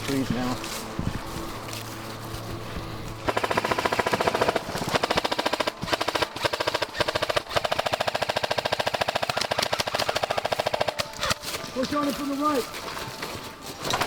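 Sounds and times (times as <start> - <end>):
airsoft guns firing full auto: 3.2 - 11.5.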